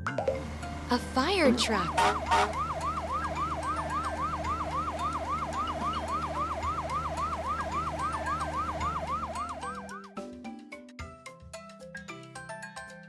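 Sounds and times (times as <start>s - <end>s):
cartoon siren warbling: 1.8s - 10.1s.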